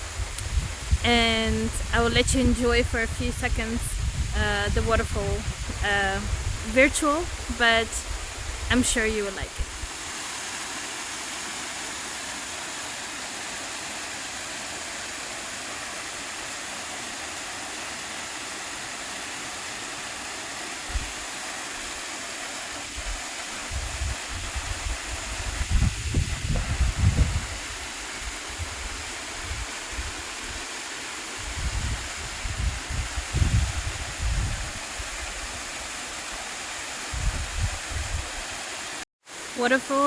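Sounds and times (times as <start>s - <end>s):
waterfall roaring: 0.8s - 25.6s.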